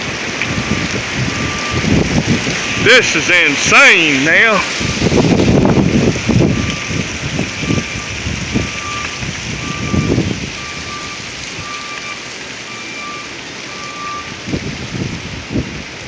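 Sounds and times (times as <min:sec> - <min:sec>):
wind buffeting microphone: 0:00.0 - 0:03.7, 0:04.6 - 0:11.8, 0:14.2 - 0:16.0
strong gusty wind: 0:00.0 - 0:11.8, 0:14.1 - 0:16.0.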